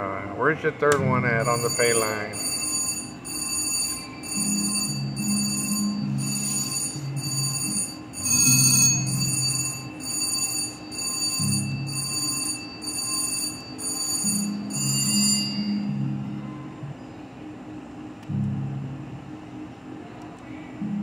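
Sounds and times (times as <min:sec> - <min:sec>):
bell-like chimes: 0:01.4 - 0:03.1
slot machine game music: 0:01.4 - 0:15.9.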